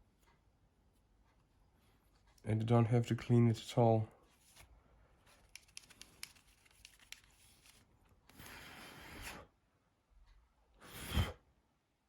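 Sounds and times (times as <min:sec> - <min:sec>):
small ticks: 0:05.5 - 0:07.3
puff of breath: 0:10.8 - 0:11.5.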